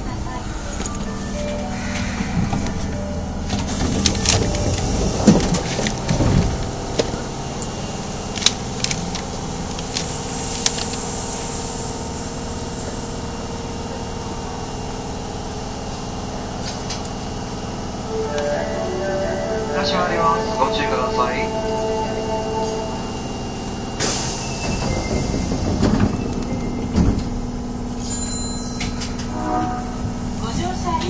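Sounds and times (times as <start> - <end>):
subway train equipment hum: 0.0 - 31.0
knocks and rumbles: 24.7 - 27.5.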